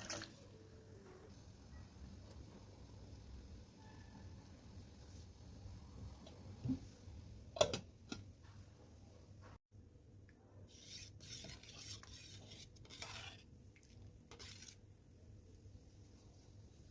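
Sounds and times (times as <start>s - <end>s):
utensil scraping and stirring: 10.7s - 14.9s.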